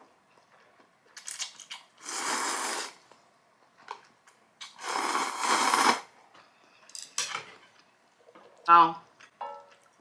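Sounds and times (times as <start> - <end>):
person slurping noodles: 2.0 - 3.0, 4.7 - 6.1.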